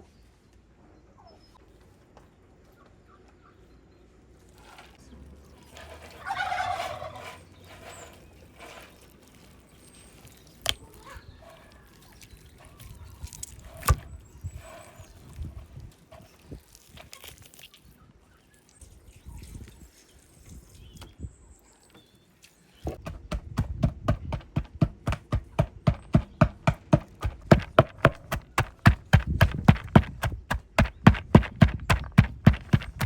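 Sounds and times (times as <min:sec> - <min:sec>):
fast run of sharp knocks: 0:23.0 - 0:33.0.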